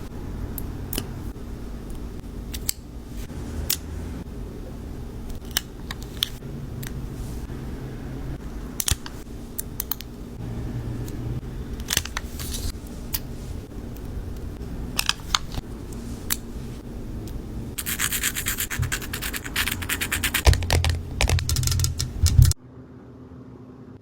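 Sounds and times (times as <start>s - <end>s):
rubbing and scratching handling noise: 11.9s - 13.7s, 17.8s - 22.6s.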